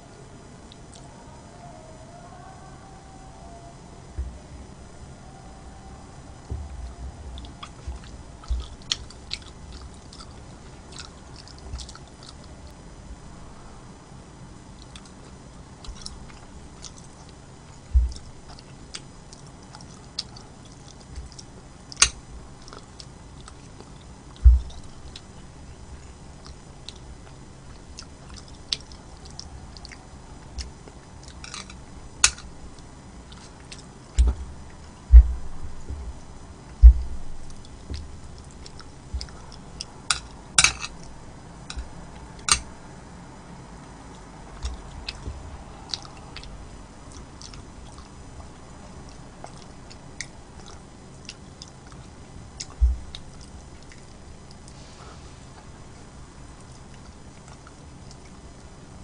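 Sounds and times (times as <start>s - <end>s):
short low thumps: 4.1s - 5.0s, 6.3s - 9.0s, 17.9s - 18.2s, 24.4s - 25.0s, 34.2s - 38.4s, 52.8s - 53.2s
chewing food close up: 5.3s - 12.8s, 14.7s - 42.8s, 43.8s - 59.0s.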